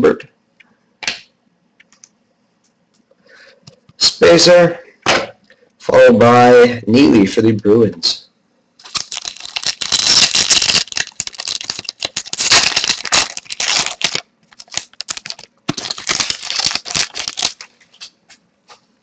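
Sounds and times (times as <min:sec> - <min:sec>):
cards rustling and clicking: 0:08.8 - 0:18.2.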